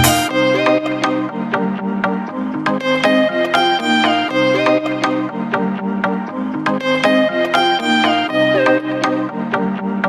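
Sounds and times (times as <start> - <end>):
plucked melody: 0.0 - 1.6, 2.7 - 5.7
sustained chords: 0.0 - 10.0.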